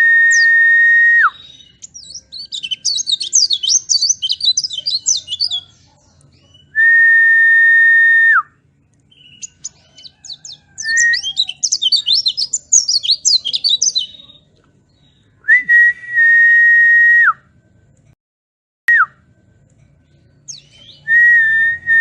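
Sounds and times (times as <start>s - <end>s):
bird whistling and twittering: 0.0s - 5.8s, 9.1s - 14.4s, 20.4s - 22.0s.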